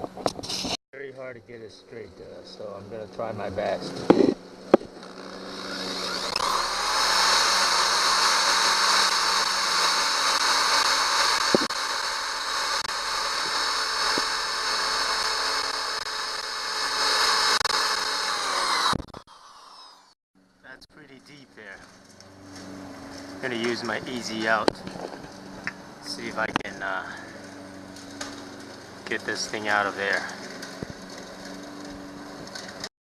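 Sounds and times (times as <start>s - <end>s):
power drill boring into steel: 5.0s - 20.2s, 26.0s - 32.9s.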